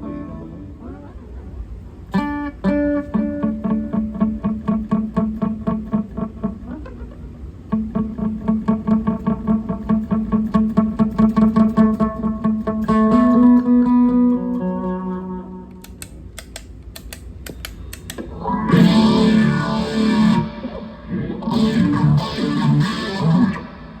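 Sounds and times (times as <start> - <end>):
distorted strummed guitar chords: 0.0 - 15.8, 18.2 - 24.0
electric guitar notes ringing: 0.0 - 16.0, 18.2 - 24.0
muted guitar string clicks: 15.6 - 18.3.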